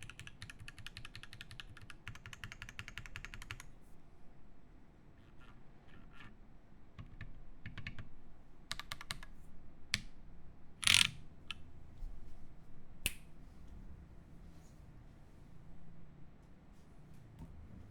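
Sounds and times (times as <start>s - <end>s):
mechanical keyboard typing: 0.0s - 3.7s, 10.8s - 11.2s.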